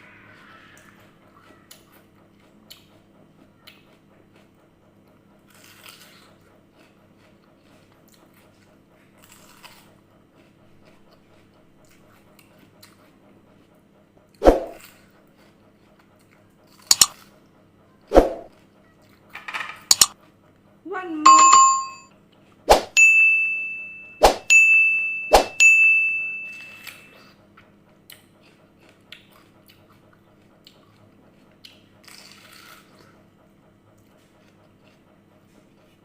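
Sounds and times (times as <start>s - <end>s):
chewing and crunching apple: 0.1s - 17.5s, 26.7s - 36.0s.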